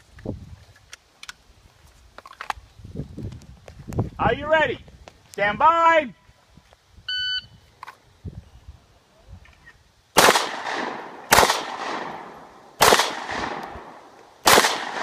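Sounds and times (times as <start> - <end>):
pistol shots with echo: 10.2 - 15.0.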